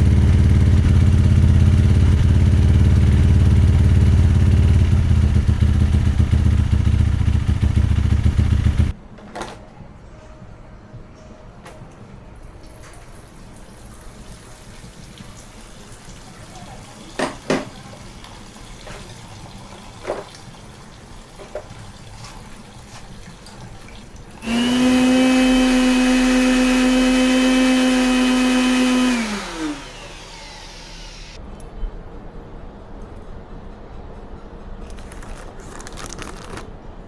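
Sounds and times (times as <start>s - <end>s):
small motor whining: 24.4s - 31.4s.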